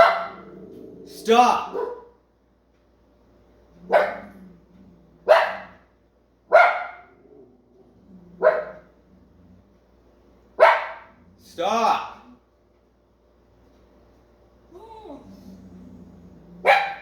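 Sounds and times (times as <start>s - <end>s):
dog barking: 0.0s - 0.5s, 1.7s - 2.2s, 3.8s - 4.3s, 5.2s - 5.8s, 6.5s - 7.2s, 8.4s - 8.9s, 10.6s - 11.2s, 16.6s - 17.0s.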